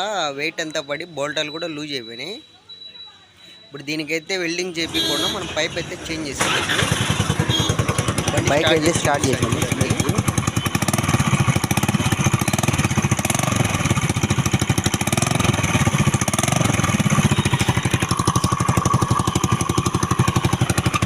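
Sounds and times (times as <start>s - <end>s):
scooter engine idling with rapid putter: 4.8s - 21.0s.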